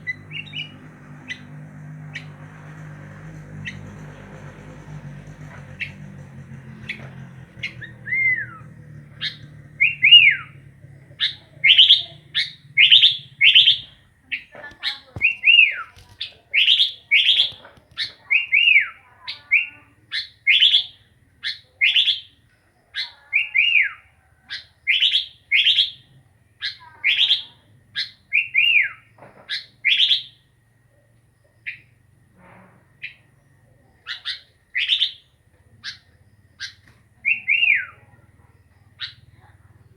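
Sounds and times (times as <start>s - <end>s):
bulbul whistled song: 0.0s - 1.5s, 7.6s - 10.6s, 11.2s - 14.0s, 15.2s - 15.9s, 23.4s - 30.4s, 34.1s - 38.1s.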